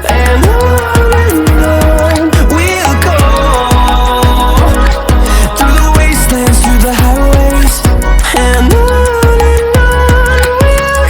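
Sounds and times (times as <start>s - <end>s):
pop music with heavy bass: 0.0s - 11.0s.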